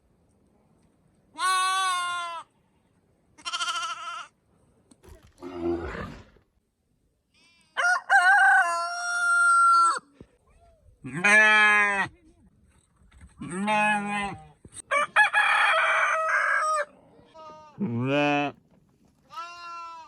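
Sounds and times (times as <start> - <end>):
sheep bleating: 1.4 - 2.5, 3.4 - 4.3, 11.1 - 12.1, 17.3 - 18.6, 19.3 - 20.0
rooster crowing: 7.8 - 10.0, 14.9 - 16.9.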